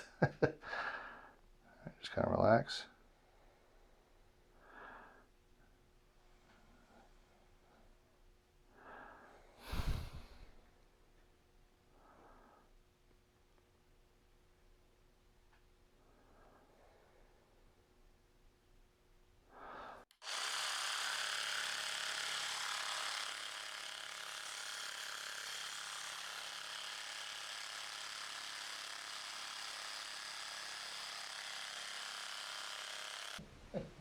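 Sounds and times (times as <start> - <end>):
massager motor buzz: 20.1 - 33.4.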